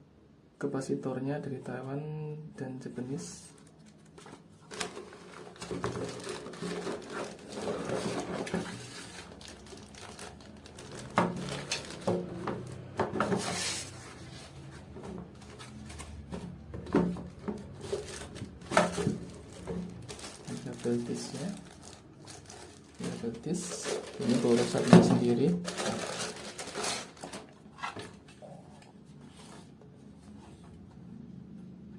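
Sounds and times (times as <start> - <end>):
packaging rustling and crinkling: 3.4 - 28.5.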